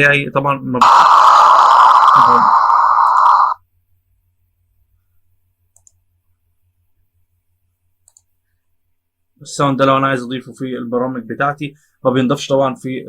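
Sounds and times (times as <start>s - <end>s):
computer mouse clicks: 5.7s - 6.0s, 8.0s - 8.3s.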